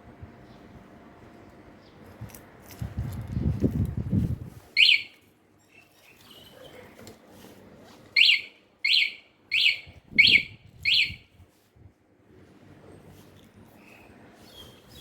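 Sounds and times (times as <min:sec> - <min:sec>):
motorcycle alarm chirps: 0:04.8 - 0:05.2, 0:08.2 - 0:11.3.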